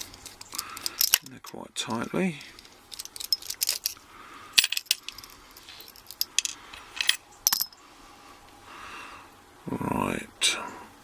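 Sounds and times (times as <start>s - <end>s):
metal lock parts clicking: 0.0s - 4.0s, 4.6s - 7.8s.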